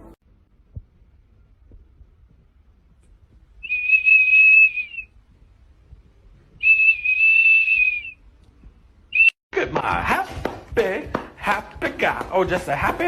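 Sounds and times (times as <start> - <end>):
high whistled notes: 3.6 - 5.1, 6.6 - 8.2, 9.1 - 9.4.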